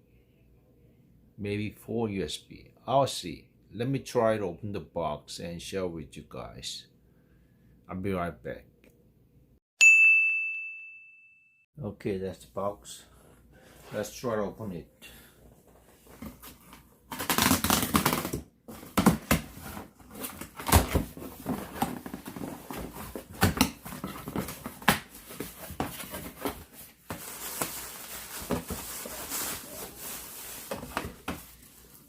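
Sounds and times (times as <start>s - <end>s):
cardboard boxes rustling and scraping: 15.5s - 32.0s.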